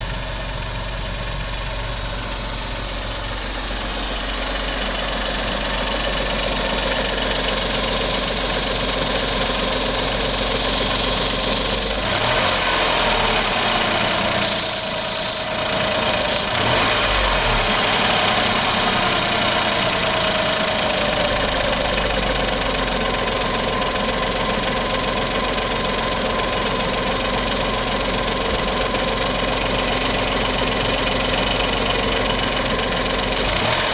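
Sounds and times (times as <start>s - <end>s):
car engine idling: 0.0s - 33.9s
creaking valve noise: 6.4s - 18.5s.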